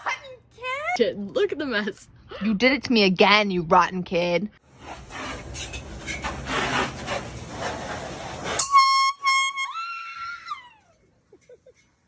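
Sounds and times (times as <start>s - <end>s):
high-pitched air horn blasts: 8.6s - 10.1s.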